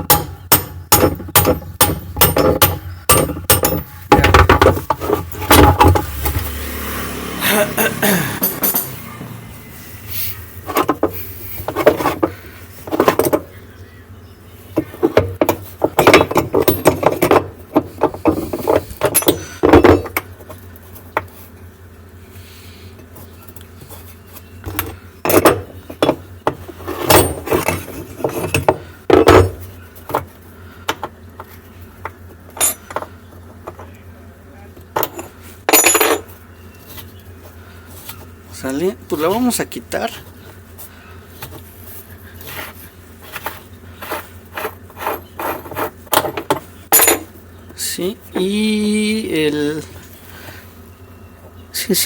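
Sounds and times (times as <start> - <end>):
metal tool and nut clinking: 0.0 - 6.5, 8.4 - 9.0, 15.4 - 20.3, 26.9 - 29.6, 32.5 - 33.1, 35.0 - 36.4, 44.6 - 47.3
steady low hum: 0.0 - 52.0.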